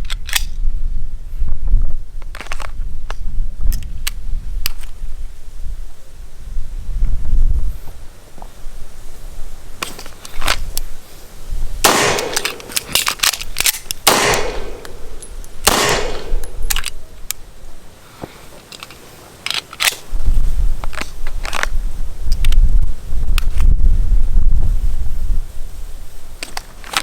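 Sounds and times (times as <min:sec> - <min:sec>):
loud gunshots with ringing echo: 0:11.8 - 0:13.1, 0:14.0 - 0:16.8
faint sharp gunshot cracks: 0:11.9 - 0:13.2, 0:14.1 - 0:16.8.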